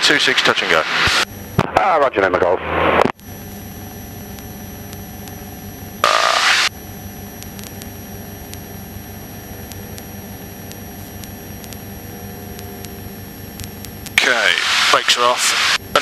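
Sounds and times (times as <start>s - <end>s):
burst of radio hiss: 0.0s - 1.3s, 6.0s - 6.7s, 14.2s - 16.0s.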